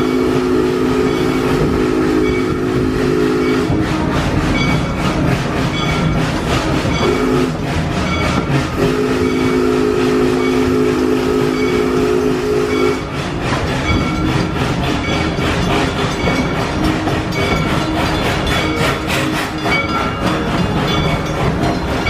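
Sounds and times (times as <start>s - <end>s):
locomotive whistle blast: 0.0s - 4.0s, 6.8s - 13.2s
train wheels clattering on track: 0.0s - 22.0s.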